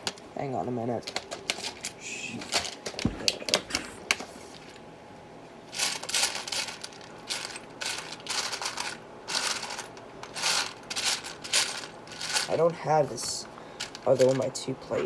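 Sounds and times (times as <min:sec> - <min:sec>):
plastic pieces clicking and rattling: 0:05.8 - 0:12.5.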